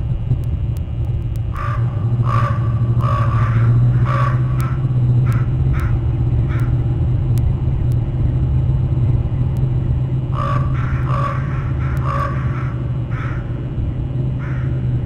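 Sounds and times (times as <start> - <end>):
steady low rumble: 0.0 - 15.0
crows cawing: 1.5 - 6.9, 10.3 - 13.8, 14.4 - 15.0.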